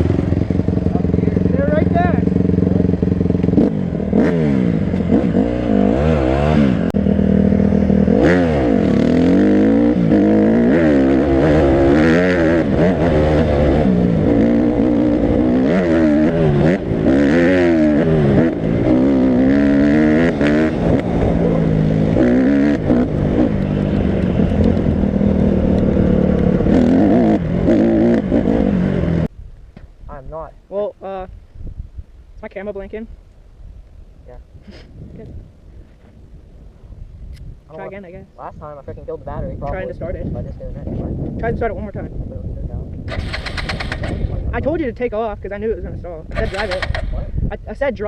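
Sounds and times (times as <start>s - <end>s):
off-road vehicle engine revving: 0.0s - 29.3s, 43.0s - 44.8s, 46.3s - 47.3s.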